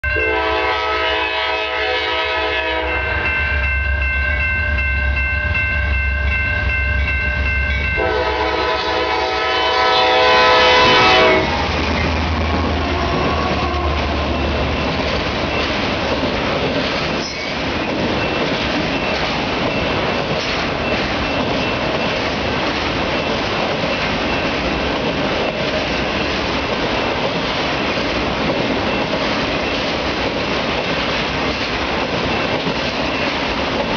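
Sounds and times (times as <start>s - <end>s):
locomotive horn blasts: 0.0s - 3.4s, 8.0s - 11.6s, 12.7s - 14.4s
freight cars rolling on rails: 2.1s - 33.9s.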